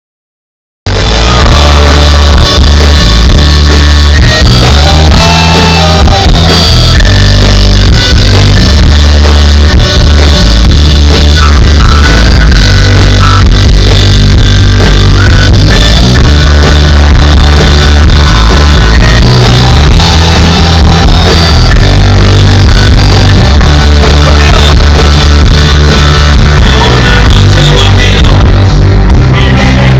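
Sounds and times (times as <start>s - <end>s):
rock band playing: 0.9s - 29.9s.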